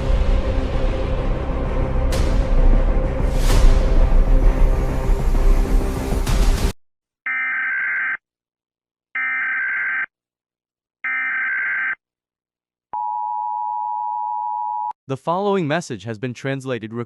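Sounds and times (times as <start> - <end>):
music: 0.0 - 6.8.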